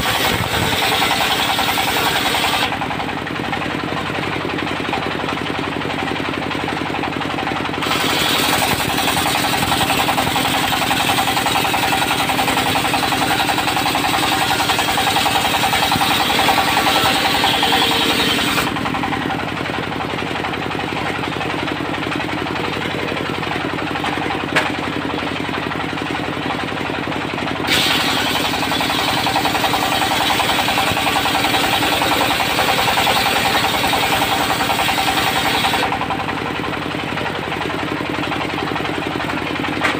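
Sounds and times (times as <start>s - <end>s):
saw blade rasping through log: 0.0s - 2.8s, 7.8s - 18.8s, 27.7s - 35.9s
diesel engine chugging: 0.0s - 39.9s.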